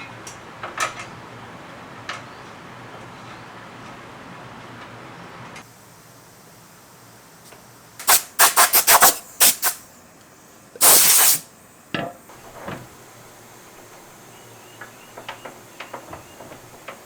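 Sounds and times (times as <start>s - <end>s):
hissing spray bursts: 5.8s - 11.7s.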